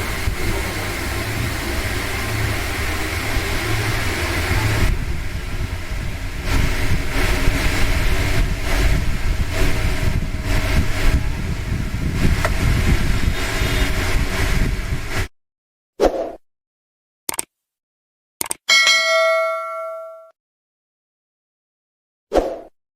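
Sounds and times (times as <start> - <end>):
table fan running: 0.0 - 15.3.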